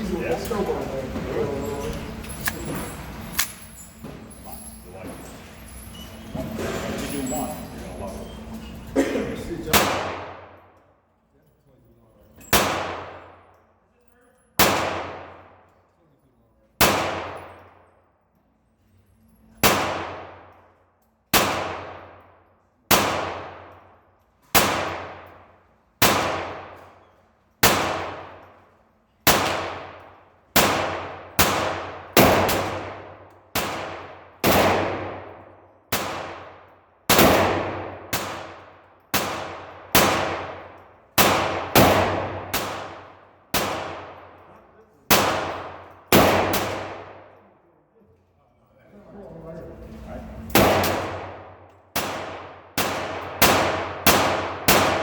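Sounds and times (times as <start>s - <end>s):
pistol shots ringing: 1.4s - 4.3s, 8.3s - 10.7s, 12.4s - 13.6s, 14.6s - 15.7s, 16.8s - 17.9s, 19.6s - 20.7s, 21.3s - 28.6s, 29.2s - 47.4s, 50.4s - 55.0s.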